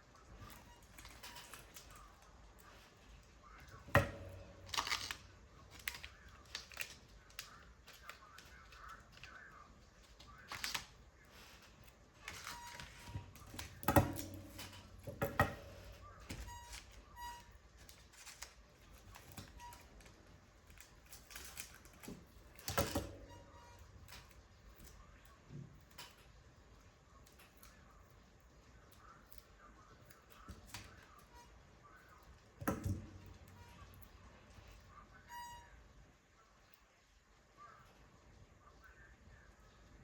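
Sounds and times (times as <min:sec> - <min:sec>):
paper rustling: 0:00.2 - 0:23.0.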